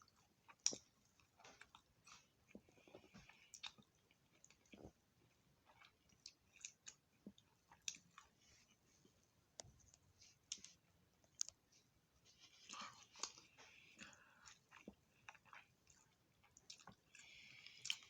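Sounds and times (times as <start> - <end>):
person chewing: 0.0 - 8.9, 9.9 - 18.0
food crunching: 0.1 - 8.8, 12.4 - 18.0.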